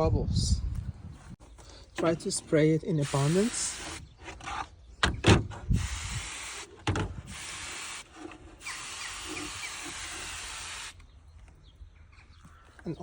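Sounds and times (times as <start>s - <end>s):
hand sprayer hissing: 3.0s - 4.0s, 5.8s - 11.0s.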